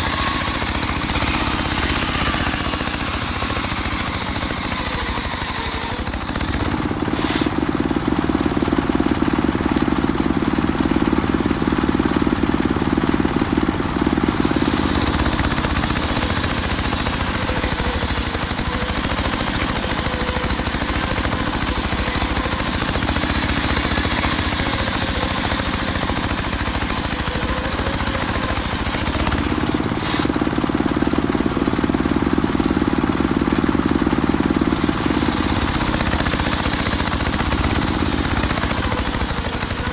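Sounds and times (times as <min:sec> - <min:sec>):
circular saw ripping wood: 0:00.0 - 0:07.6, 0:14.3 - 0:30.4, 0:34.7 - 0:39.9.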